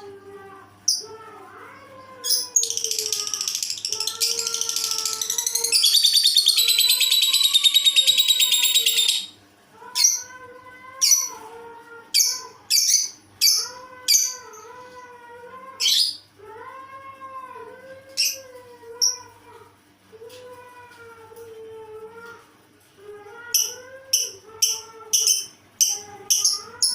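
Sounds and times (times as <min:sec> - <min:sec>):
lovebird chattering: 0:02.4 - 0:09.3.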